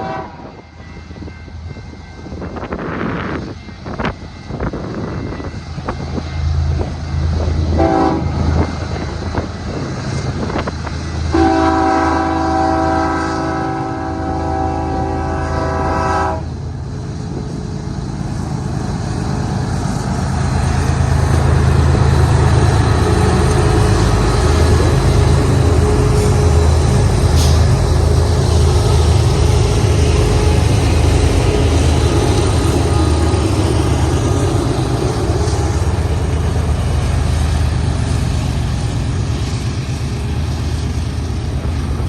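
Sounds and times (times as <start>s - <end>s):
train horn blasts: 0.0s - 1.2s, 5.9s - 9.5s, 11.3s - 16.6s, 22.2s - 34.4s
diesel locomotive engines rumbling: 0.0s - 42.0s.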